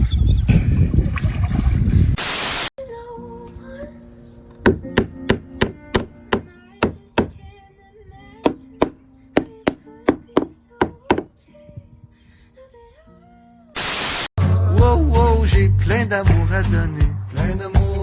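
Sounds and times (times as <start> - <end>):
quiet music with held notes: 2.8 - 9.3
sharp knocks: 4.6 - 7.4, 8.4 - 11.3.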